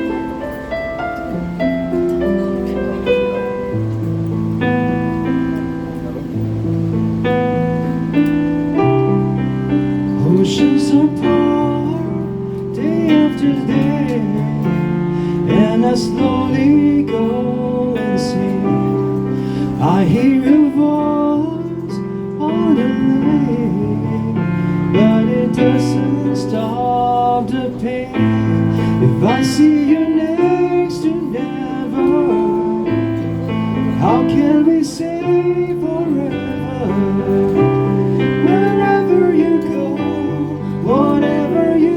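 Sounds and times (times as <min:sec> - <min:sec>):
sustained keyboard chords: 0:00.0 - 0:41.9
person singing: 0:10.1 - 0:41.9.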